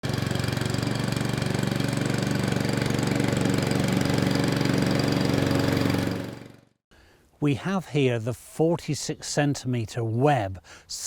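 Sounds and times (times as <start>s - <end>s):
lawnmower engine running: 0.0s - 6.7s.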